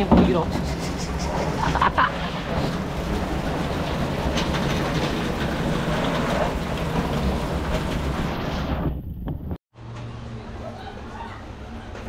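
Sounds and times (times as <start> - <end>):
heavy rain pouring: 0.0 - 9.6.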